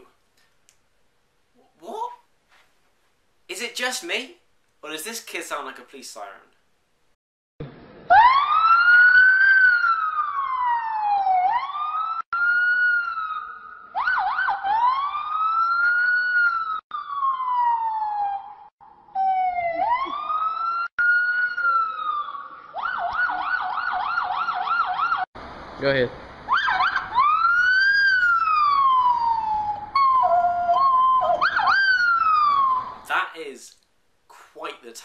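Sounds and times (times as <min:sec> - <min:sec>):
child imitating a police siren: 0:26.5 - 0:32.9.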